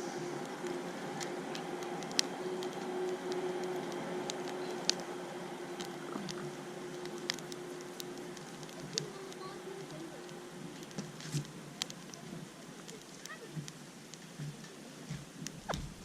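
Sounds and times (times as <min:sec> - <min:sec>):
campfire crackling and popping: 0:00.0 - 0:16.0
campfire hiss: 0:00.0 - 0:16.0
faint steady hum: 0:00.0 - 0:16.0.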